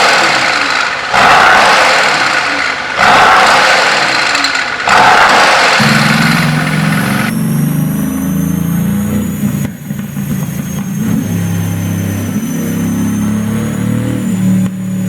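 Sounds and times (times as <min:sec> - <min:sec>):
loud rushing noise: 0:00.0 - 0:12.4
car engine at low revs: 0:05.8 - 0:15.0.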